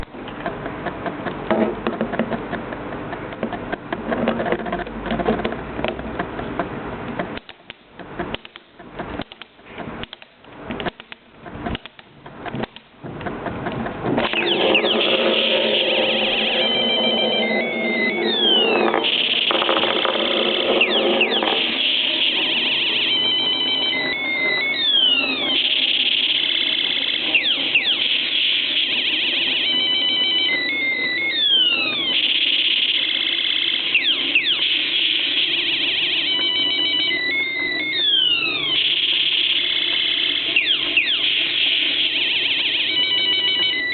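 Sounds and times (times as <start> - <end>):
sharp clicks: 5.9 - 14.6
toy electronic sound effect: 14.2 - 43.9.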